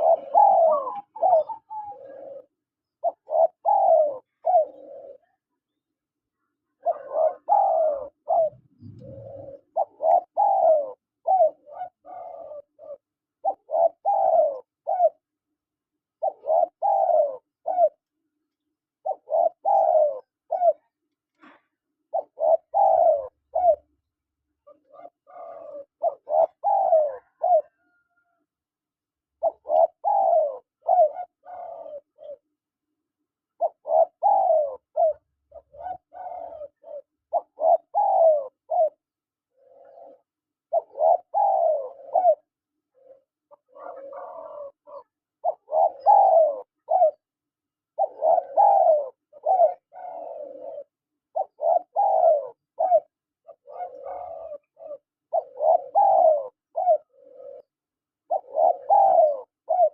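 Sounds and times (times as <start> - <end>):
doves cooing: 0.0 - 5.5, 6.8 - 15.3, 16.2 - 18.1, 19.0 - 24.0, 24.6 - 28.5, 29.4 - 32.5, 33.5 - 47.3, 47.9 - 59.9.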